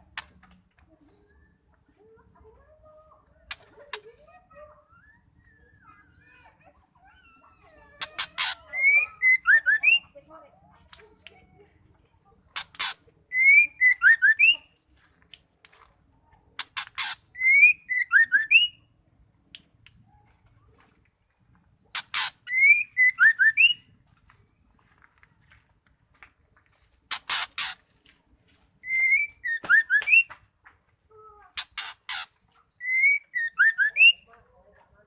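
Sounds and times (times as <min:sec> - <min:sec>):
bird calling with rasp and whistles: 0:07.4 - 0:10.2, 0:12.5 - 0:14.8, 0:16.6 - 0:18.9, 0:21.9 - 0:24.0, 0:26.8 - 0:28.0, 0:28.8 - 0:30.4, 0:31.5 - 0:34.3.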